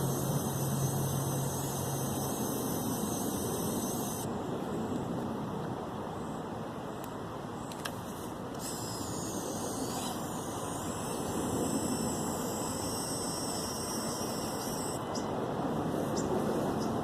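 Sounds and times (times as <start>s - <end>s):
servo winch whining: 0.0s - 4.3s, 8.5s - 15.2s
steady rushing noise: 0.0s - 6.0s, 8.0s - 17.0s.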